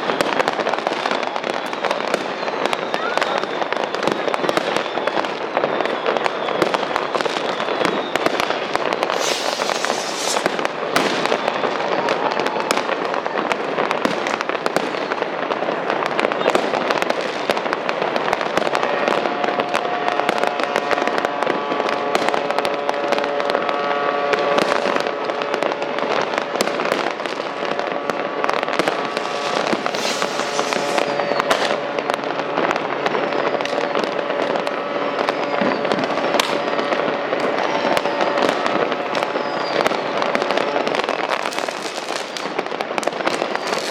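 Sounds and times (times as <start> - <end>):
fireworks bangs and crackling: 0.0 - 43.9
rushing hiss: 9.1 - 10.6, 29.2 - 31.2.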